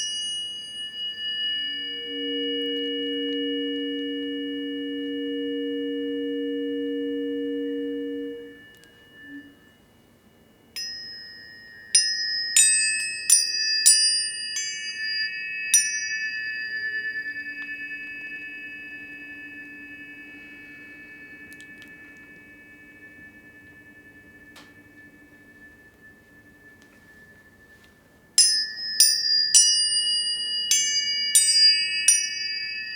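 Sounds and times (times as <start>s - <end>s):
high tuning forks ringing: 0.0s - 32.9s
low tuning forks humming: 0.0s - 32.9s
sharp strikes on tuning forks: 10.8s - 32.9s.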